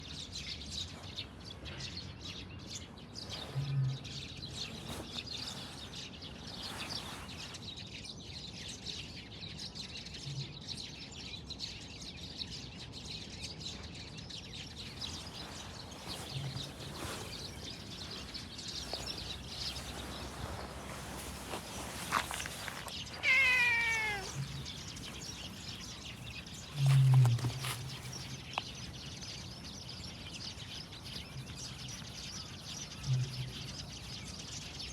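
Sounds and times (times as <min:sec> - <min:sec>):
cat meowing: 0:23.1 - 0:25.0.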